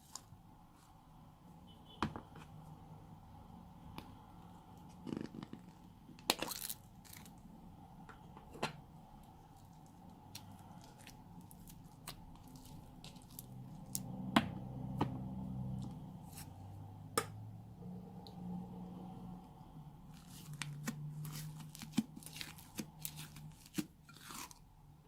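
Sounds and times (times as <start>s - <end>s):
hands squishing slime: 9.2s - 14.1s, 20.2s - 24.6s.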